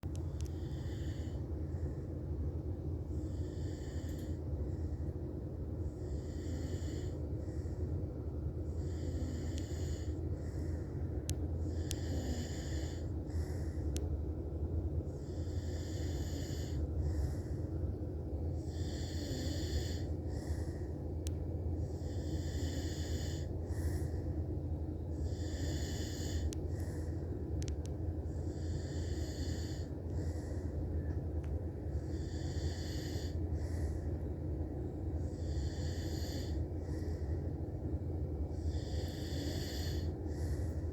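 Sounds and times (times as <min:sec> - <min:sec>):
steady low hum: 0:00.0 - 0:40.9
man snoring: 0:38.7 - 0:40.1.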